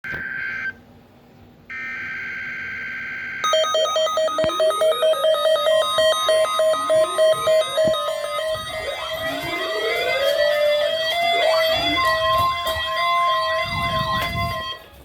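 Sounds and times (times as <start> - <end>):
alternating alert tones: 3.4 - 9.9
two-tone digital warble: 3.4 - 12.2.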